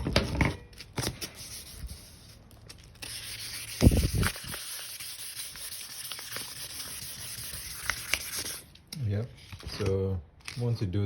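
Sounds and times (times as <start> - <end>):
wet sandpaper rubbing hiss: 3.0 - 8.6.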